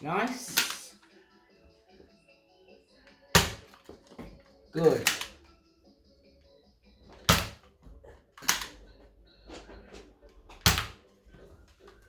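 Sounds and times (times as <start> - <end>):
toy dart pistol plastic clacks: 5.0 - 5.4.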